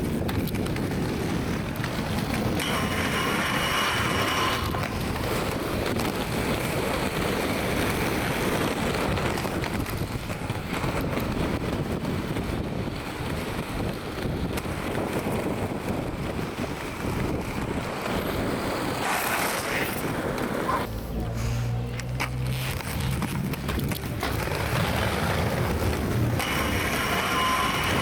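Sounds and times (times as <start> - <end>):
wind buffeting microphone: 0.0 - 28.0
brief high tone: 26.4 - 28.0.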